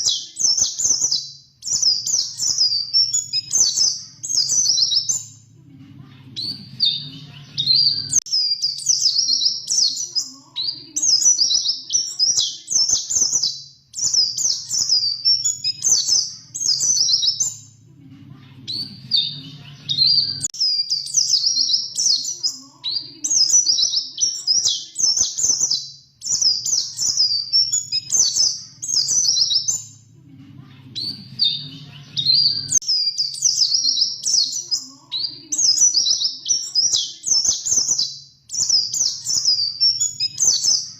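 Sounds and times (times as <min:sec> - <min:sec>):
bird high twittering song: 0:00.0 - 0:05.5, 0:06.4 - 0:17.8, 0:18.7 - 0:30.1, 0:31.0 - 0:40.9
faint low hum: 0:03.9 - 0:08.1, 0:16.3 - 0:20.4, 0:29.3 - 0:32.8.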